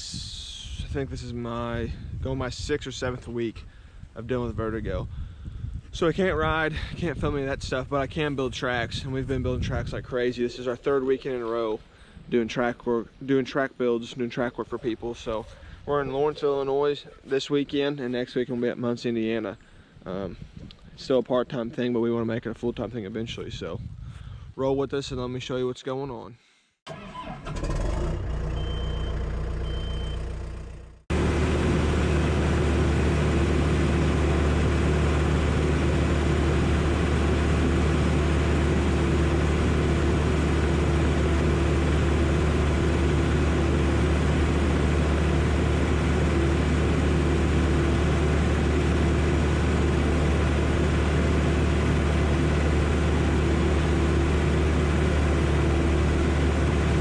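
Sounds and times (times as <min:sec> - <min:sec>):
diesel engine droning: 0:26.9 - 0:57.0.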